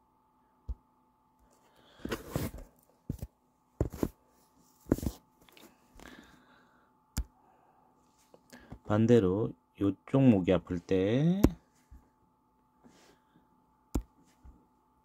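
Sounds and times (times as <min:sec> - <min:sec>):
faint electrical hum: 0:00.0 - 0:15.0.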